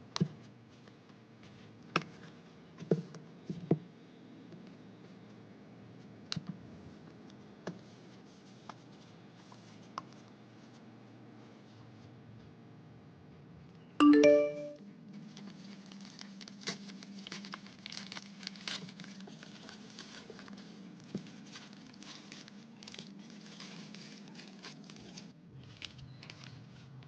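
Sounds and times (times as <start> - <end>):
plastic packaging crinkling: 15.3 - 27.0.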